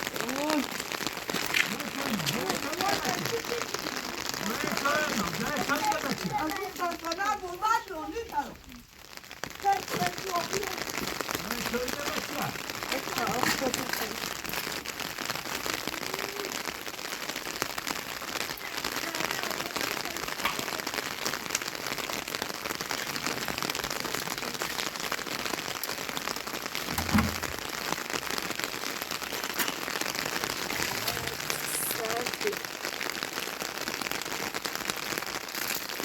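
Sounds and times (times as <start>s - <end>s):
rain falling: 0.0s - 36.0s
dull thump: 26.9s - 27.6s.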